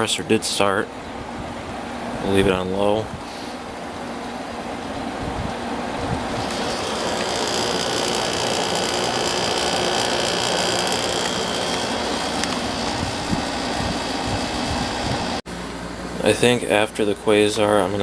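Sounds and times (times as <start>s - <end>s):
air conditioner blower rushing: 0.0s - 18.0s
high steady whine: 4.8s - 15.4s.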